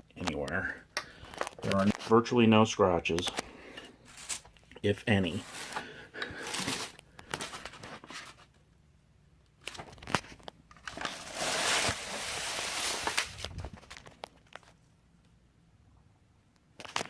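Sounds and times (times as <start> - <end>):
rustling and rubbing: 5.2 - 8.5, 10.8 - 14.2.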